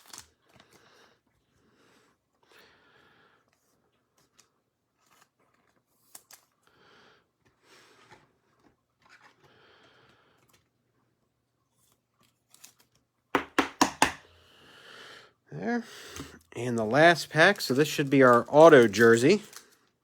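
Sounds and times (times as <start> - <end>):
faint wrapper rustling: 3.5 - 6.7, 16.3 - 20.0.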